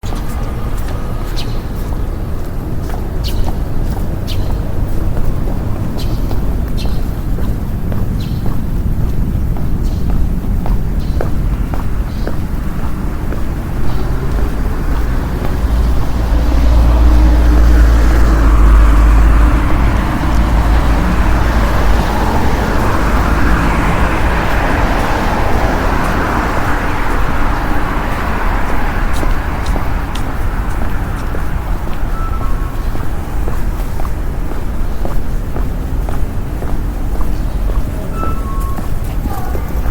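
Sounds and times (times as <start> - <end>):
heavy vehicle rumbling past: 0.0 - 33.4
cars passing road noise: 0.0 - 39.9.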